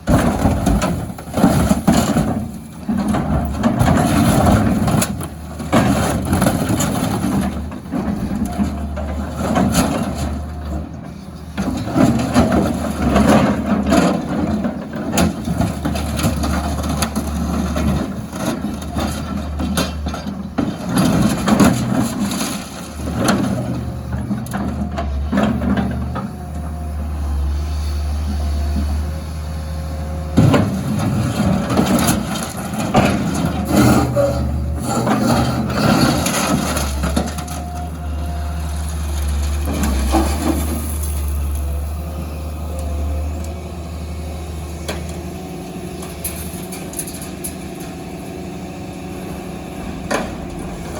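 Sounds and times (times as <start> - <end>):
excavator engine running under load: 0.0 - 50.9
metal crunching and cracking: 30.4 - 38.2.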